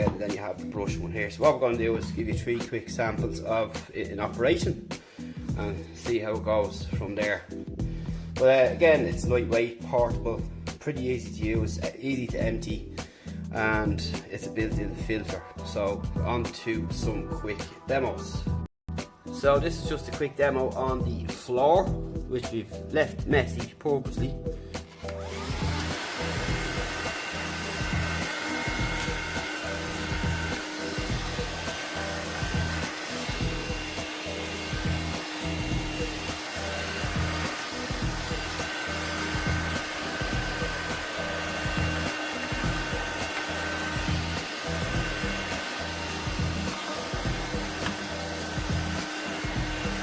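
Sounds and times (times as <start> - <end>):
vacuum cleaner motor whine: 24.9 - 50.0.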